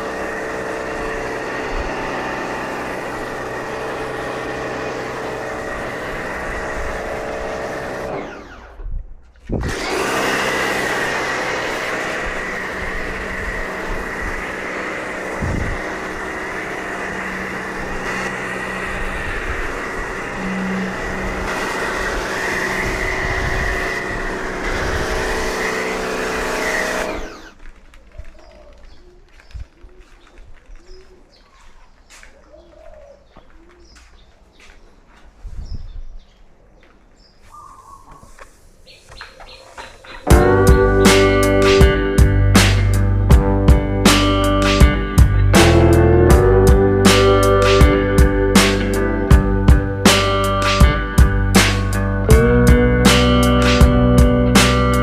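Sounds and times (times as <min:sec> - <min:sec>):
pressure washer running: 0:00.0 - 0:08.8, 0:09.6 - 0:27.7, 0:40.3 - 0:55.0
doves cooing: 0:28.0 - 0:34.1, 0:37.6 - 0:40.3
bird chirps: 0:35.6 - 0:40.3.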